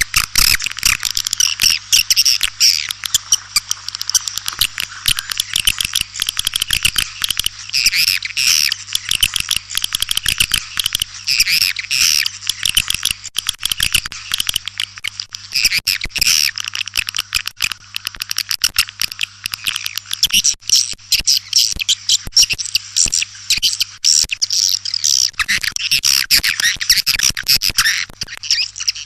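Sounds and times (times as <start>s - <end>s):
swiftlets twittering: 0.0s - 13.1s.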